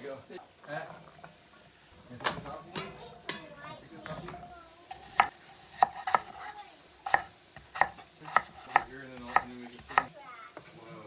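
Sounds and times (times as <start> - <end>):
knife chopping on cutting board: 4.9 - 10.1.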